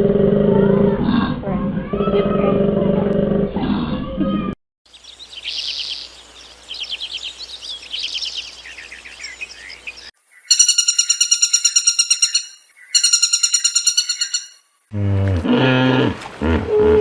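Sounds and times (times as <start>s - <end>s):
songbird trilling: 4.9s - 14.6s.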